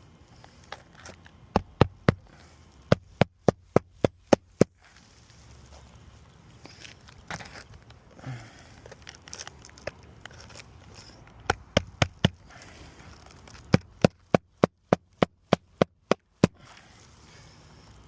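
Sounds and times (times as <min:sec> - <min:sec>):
hammer striking roofing nails: 0:01.5 - 0:02.3, 0:02.9 - 0:04.7, 0:11.5 - 0:12.4, 0:13.7 - 0:16.6.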